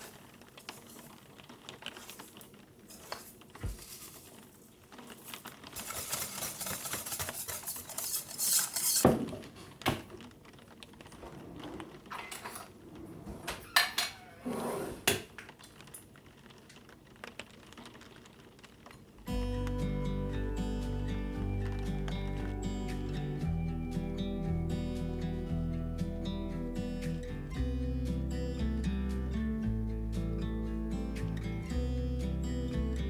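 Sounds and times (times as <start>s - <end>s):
rustling noise: 0.0s - 13.7s.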